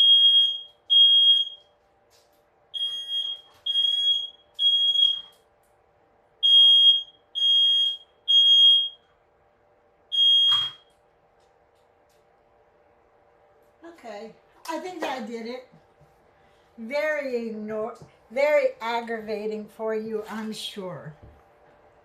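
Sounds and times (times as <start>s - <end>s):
smoke alarm beeping: 0.0s - 1.8s, 2.7s - 5.4s, 6.4s - 9.1s, 10.1s - 11.0s.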